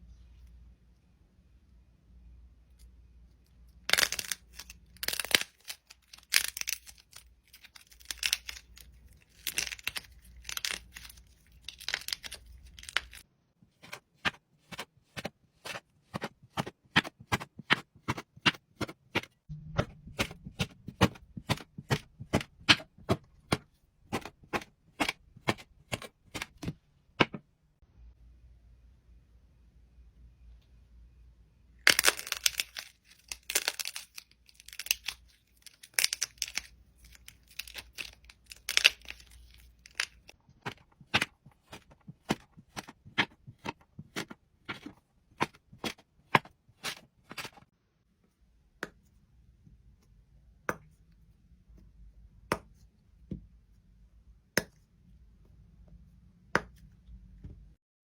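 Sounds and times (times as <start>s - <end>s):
brittle crunching and tearing: 3.9s - 13.2s, 31.9s - 40.4s.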